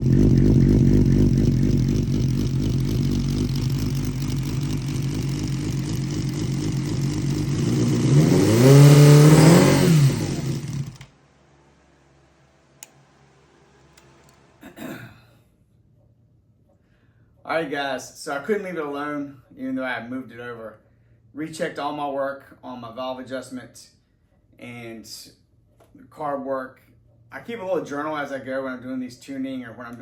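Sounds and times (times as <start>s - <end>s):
motorcycle engine idling and revving: 0.0s - 11.2s.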